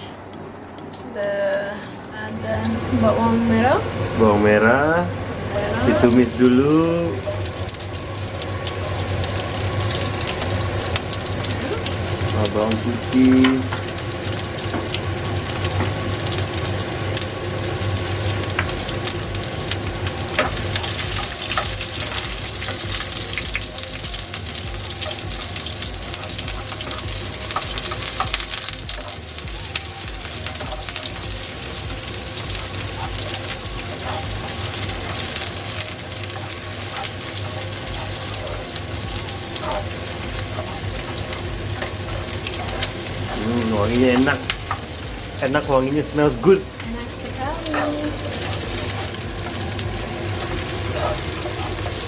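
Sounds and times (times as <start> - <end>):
steady low hum: 0.0 - 52.0
shallots and garlic sizzling in oil: 5.5 - 52.0
utensil clicking against pan: 17.6 - 45.0.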